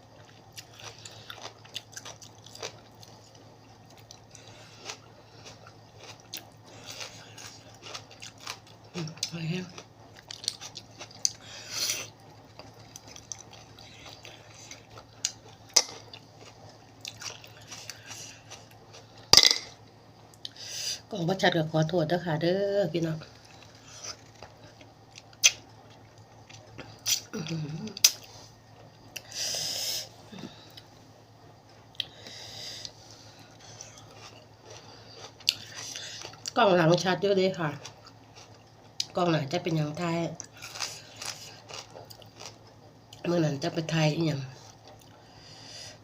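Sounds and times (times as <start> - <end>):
person chewing: 0.1 - 19.7, 31.9 - 36.6, 37.8 - 39.1, 40.4 - 43.2.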